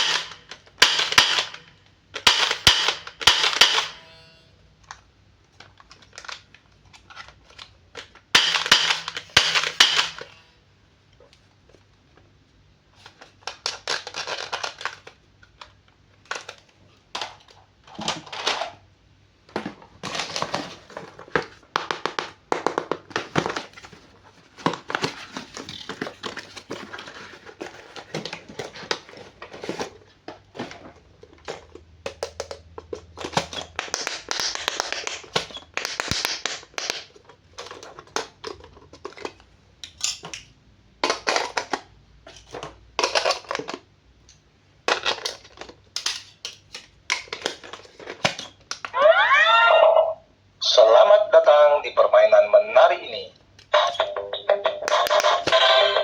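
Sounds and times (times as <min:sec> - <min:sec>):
clicks and taps: 0:32.1 - 0:37.1
plastic packaging crinkling: 0:33.2 - 0:39.4.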